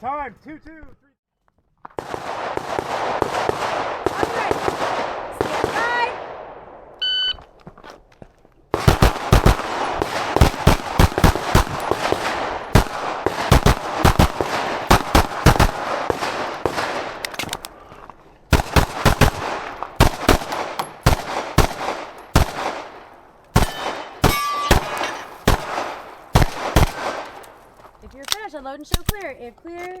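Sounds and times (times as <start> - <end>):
pistol gunshots: 2.0 - 6.9, 8.7 - 17.8, 18.5 - 27.6
shot timer beep: 7.0 - 7.4.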